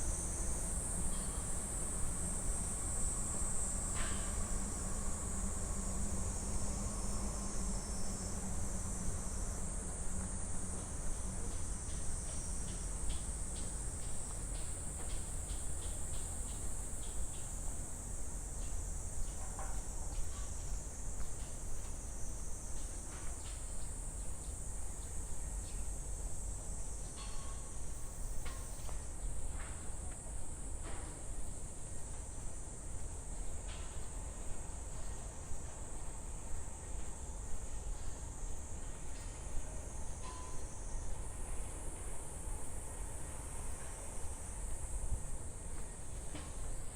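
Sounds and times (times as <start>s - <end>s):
cicadas singing: 0.0s - 29.4s.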